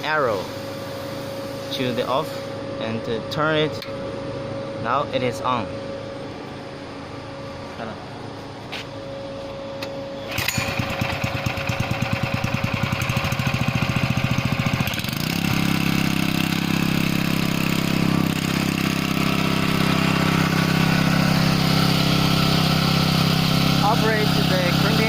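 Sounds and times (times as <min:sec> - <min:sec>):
small gasoline engine starting: 0:10.2 - 0:25.0.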